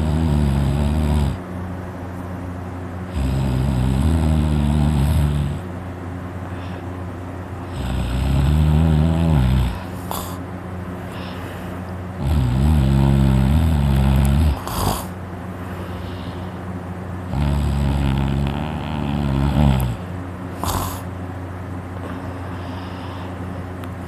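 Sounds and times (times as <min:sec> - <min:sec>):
person snoring loudly: 0:00.0 - 0:01.4, 0:03.1 - 0:05.7, 0:07.6 - 0:10.4, 0:12.2 - 0:15.2, 0:17.3 - 0:21.1
breathy puff: 0:11.0 - 0:11.9.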